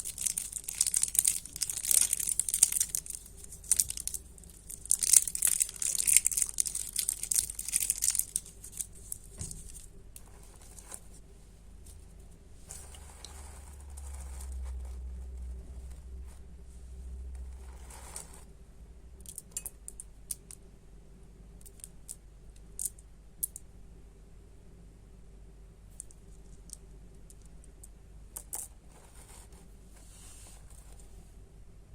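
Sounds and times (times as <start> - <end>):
candy wrappers crinkling: 0.0 - 11.0.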